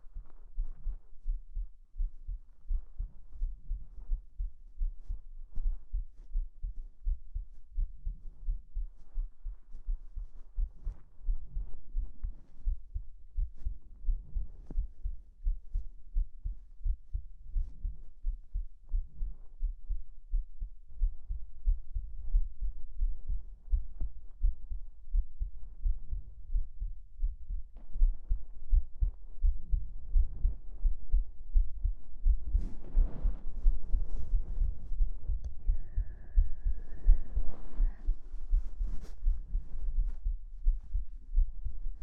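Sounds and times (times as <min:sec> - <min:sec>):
heartbeat double thumps: 0:00.0 - 0:42.0.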